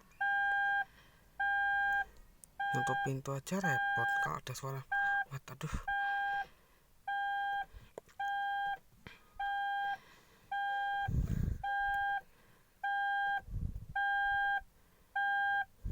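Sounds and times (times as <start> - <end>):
electronic alarm beeping: 0.2 - 4.3, 4.9 - 6.4, 7.1 - 8.8, 9.4 - 12.2, 12.8 - 13.4, 14.0 - 14.6, 15.2 - 15.7
dull low thumps: 11.0 - 11.9, 13.4 - 14.0.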